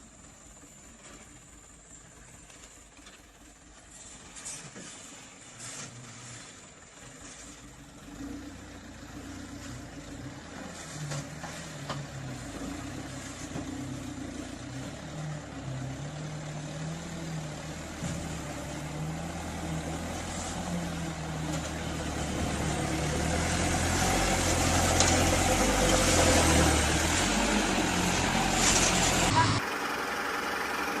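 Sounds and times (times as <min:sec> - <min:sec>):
vehicle engine revving: 0:07.9 - 0:31.0.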